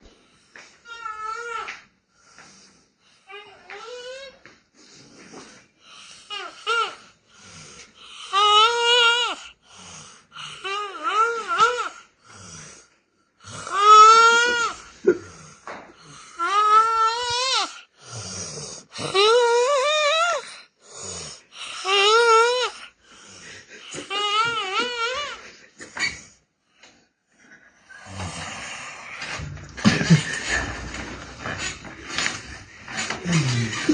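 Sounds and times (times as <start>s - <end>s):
hissing breaths: 22.7s - 24.2s, 27.4s - 33.9s.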